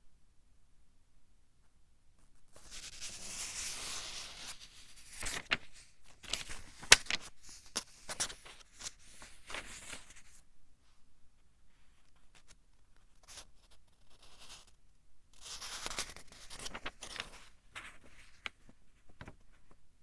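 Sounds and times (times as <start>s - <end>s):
book pages turning: 6.2s - 8.3s, 15.9s - 18.6s.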